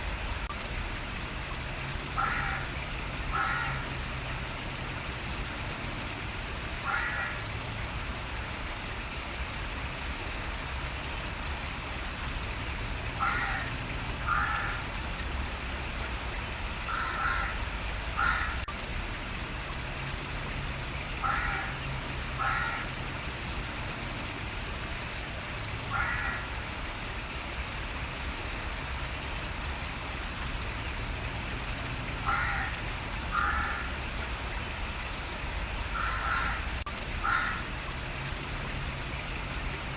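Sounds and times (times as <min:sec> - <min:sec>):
running water: 0:00.0 - 0:39.9
bird giving harsh calls: 0:03.3 - 0:03.8, 0:06.9 - 0:07.4, 0:13.2 - 0:14.8, 0:16.9 - 0:17.6, 0:18.2 - 0:18.6, 0:21.2 - 0:21.8, 0:25.9 - 0:26.4, 0:32.3 - 0:33.8, 0:36.0 - 0:37.6.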